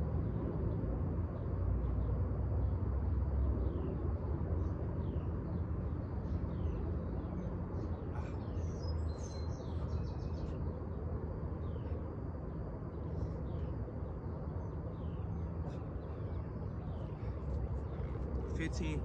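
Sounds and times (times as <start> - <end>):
steady low rumble: 0.0 - 19.0
birds chirping: 13.0 - 19.0.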